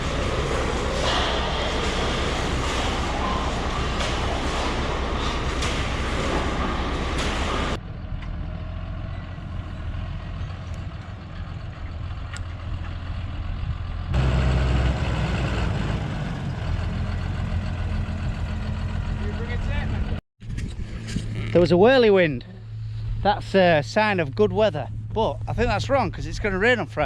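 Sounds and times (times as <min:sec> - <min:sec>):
vehicle engine running: 0:00.0 - 0:20.2.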